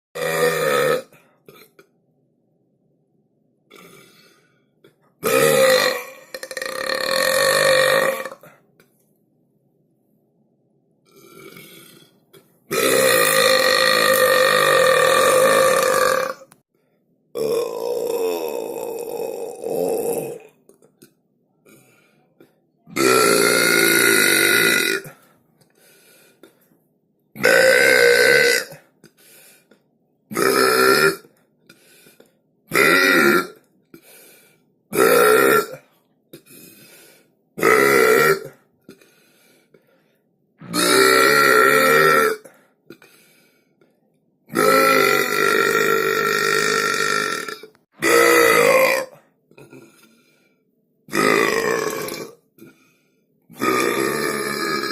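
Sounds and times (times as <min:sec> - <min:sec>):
person burping loudly: 0:00.2 - 0:01.9, 0:03.7 - 0:04.5, 0:05.2 - 0:08.6, 0:11.1 - 0:16.6, 0:17.4 - 0:21.1, 0:22.9 - 0:25.2, 0:27.4 - 0:29.0, 0:30.3 - 0:31.4, 0:32.7 - 0:33.7, 0:34.9 - 0:36.6, 0:37.6 - 0:39.0, 0:40.6 - 0:43.1, 0:44.5 - 0:50.1, 0:51.1 - 0:52.8, 0:53.5 - 0:54.9.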